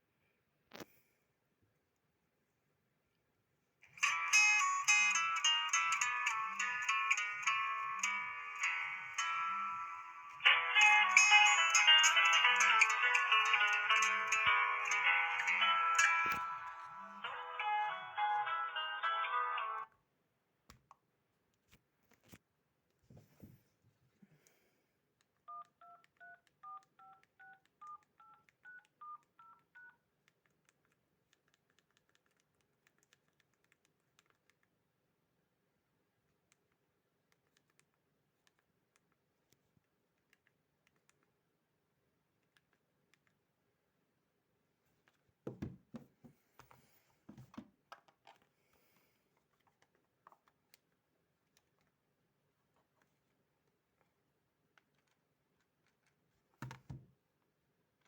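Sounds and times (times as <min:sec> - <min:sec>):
phone keypad beeps: 0:25.5 - 0:30.0.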